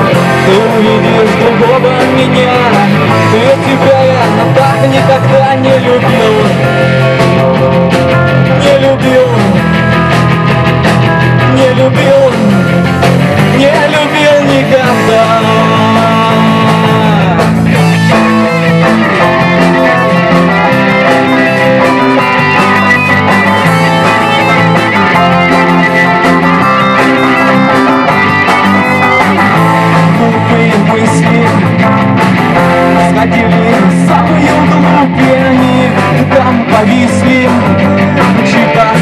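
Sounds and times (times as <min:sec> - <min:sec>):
rock band instrumental with guitars: 0:00.0 - 0:39.0.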